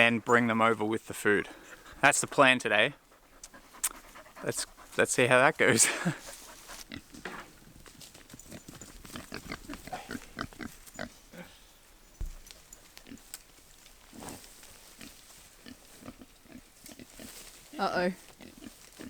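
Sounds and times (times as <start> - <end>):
pigs grunting: 2.9 - 7.6, 8.5 - 11.6, 14.1 - 17.3.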